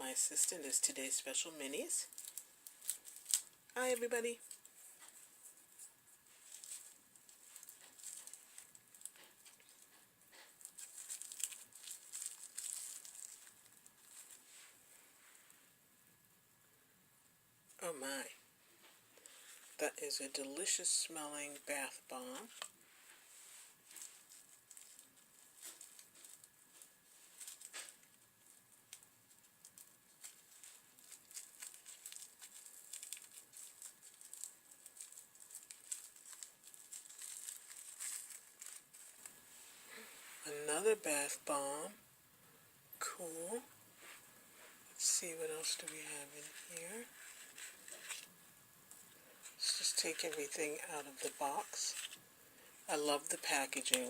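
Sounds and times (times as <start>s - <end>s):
packaging crinkling: 1.7s - 14.7s, 23.7s - 39.4s, 45.6s - 52.2s.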